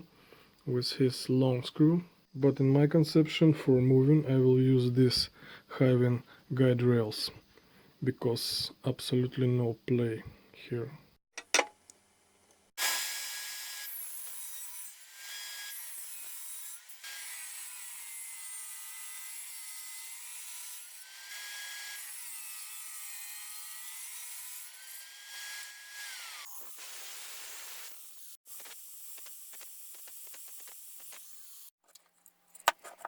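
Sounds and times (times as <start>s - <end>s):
handling noises: 11.4s - 11.8s, 31.8s - 33.0s.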